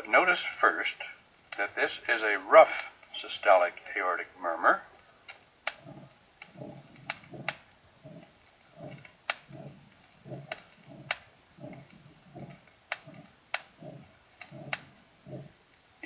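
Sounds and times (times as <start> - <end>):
sharp clicks: 5.0 - 15.9
rough heart murmur: 5.7 - 15.6.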